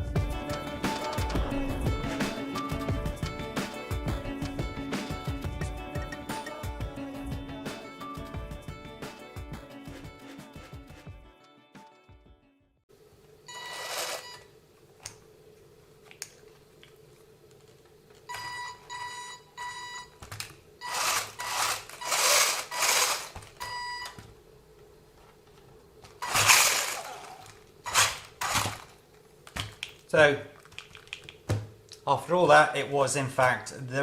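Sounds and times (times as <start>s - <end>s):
faint steady hum: 12.9s - 34.0s.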